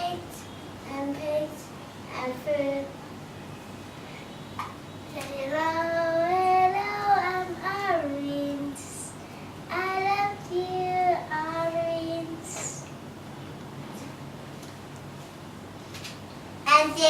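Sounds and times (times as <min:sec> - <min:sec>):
child singing: 0:00.0 - 0:03.0, 0:05.2 - 0:12.8, 0:16.7 - 0:17.0.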